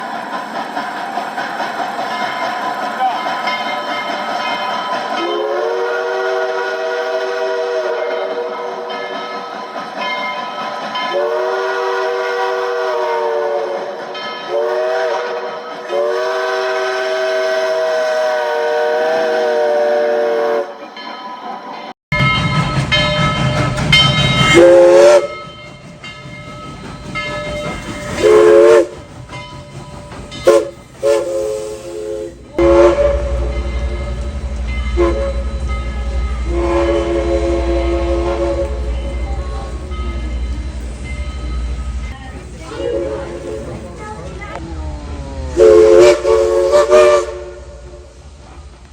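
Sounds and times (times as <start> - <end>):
steam whistle blasts: 5.2 - 9.0, 11.1 - 20.8, 24.4 - 25.4, 28.2 - 29.0, 30.4 - 39.2, 45.4 - 48.2.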